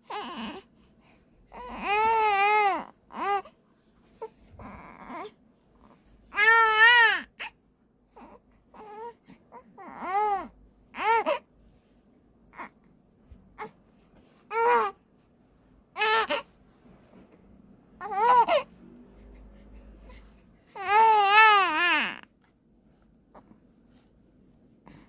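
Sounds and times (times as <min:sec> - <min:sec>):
newborn baby crying: 0:00.0 - 0:00.7, 0:01.5 - 0:03.5, 0:06.3 - 0:07.6, 0:08.2 - 0:11.5, 0:12.5 - 0:12.8, 0:14.5 - 0:15.0, 0:16.0 - 0:16.5, 0:18.0 - 0:18.7, 0:20.7 - 0:22.3.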